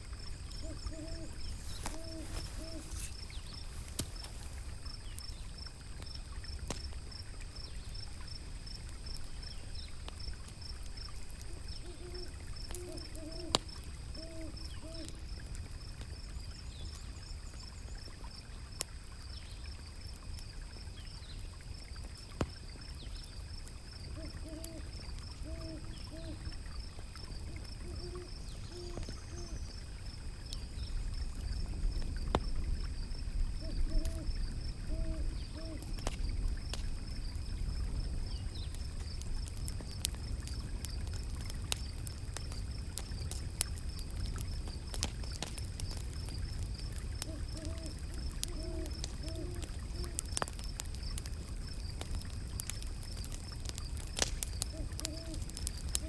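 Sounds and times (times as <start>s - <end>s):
wood fire crackling: 0.0s - 56.0s
owl hooting: 0.5s - 4.5s, 11.5s - 15.1s, 24.1s - 26.5s, 27.5s - 29.7s, 33.6s - 34.3s, 34.9s - 35.9s, 47.2s - 50.2s, 54.7s - 55.5s.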